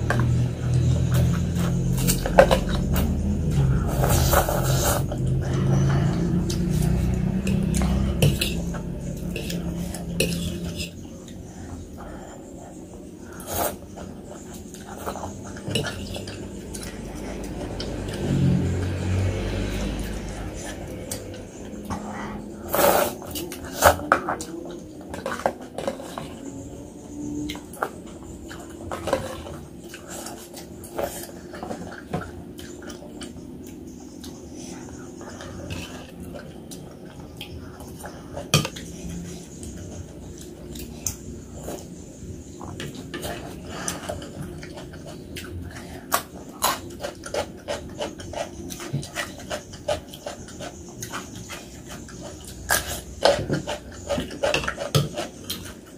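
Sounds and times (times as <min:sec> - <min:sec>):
faint steady hum: 0:00.0 - 0:55.9
scrape or slurp: 0:01.6 - 0:11.0, 0:13.2 - 0:18.4, 0:19.4 - 0:24.0
cutlery clinking against a bowl: 0:07.5 - 0:11.0, 0:46.1 - 0:55.8.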